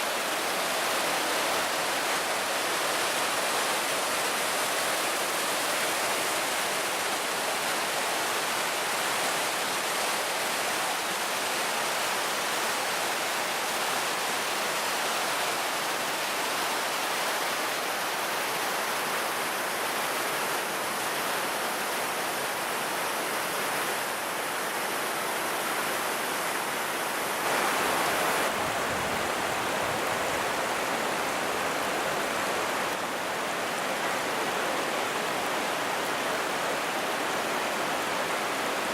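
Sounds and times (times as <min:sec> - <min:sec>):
waterfall roaring: 0:00.0 - 0:38.9.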